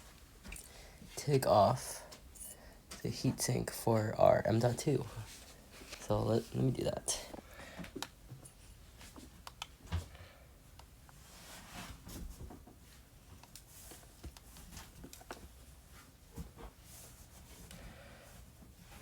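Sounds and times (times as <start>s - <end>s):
faint clicks and handling noises: 5.2s - 10.1s, 10.7s - 11.2s, 12.5s - 17.8s.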